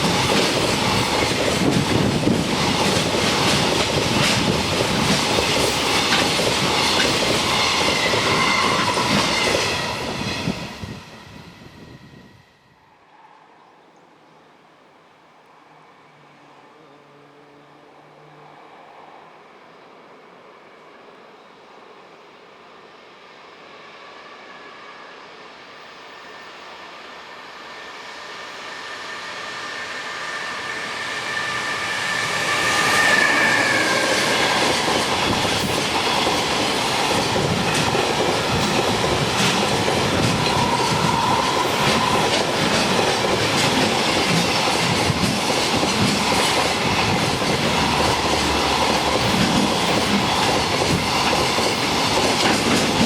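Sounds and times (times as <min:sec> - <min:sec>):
freight train passing: 0:00.0 - 0:53.0.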